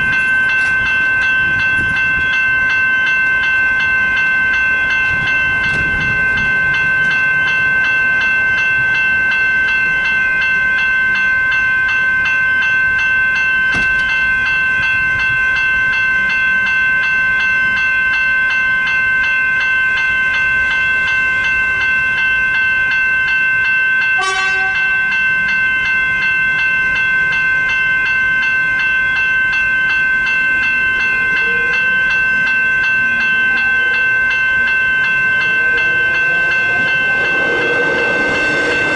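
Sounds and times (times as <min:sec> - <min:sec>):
electric train passing: 0:00.0 - 0:38.9
level crossing warning bells: 0:00.0 - 0:38.9
train horn toot: 0:24.2 - 0:25.0.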